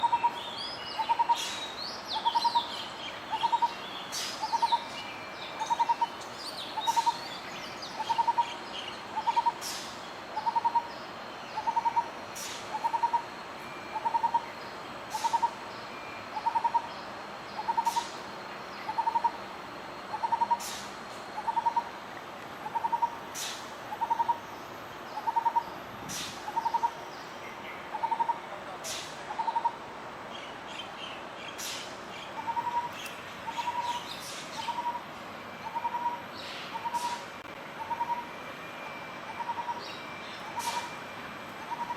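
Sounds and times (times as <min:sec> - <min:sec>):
small birds chirping: 0:00.0 - 0:13.3, 0:29.4 - 0:38.3
barbet calling: 0:00.0 - 0:15.6, 0:16.2 - 0:19.5, 0:20.1 - 0:20.8, 0:21.4 - 0:22.0, 0:22.6 - 0:25.8, 0:26.4 - 0:28.6, 0:29.3 - 0:29.8, 0:31.5 - 0:38.4, 0:39.2 - 0:41.0, 0:41.6 - 0:41.9.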